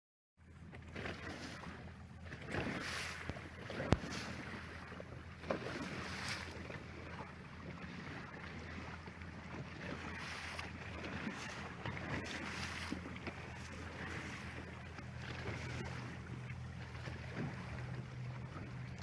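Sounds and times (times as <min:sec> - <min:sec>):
boat engine humming: 0:00.4 - 0:19.0
water noise: 0:00.4 - 0:19.0
wind: 0:00.4 - 0:19.0.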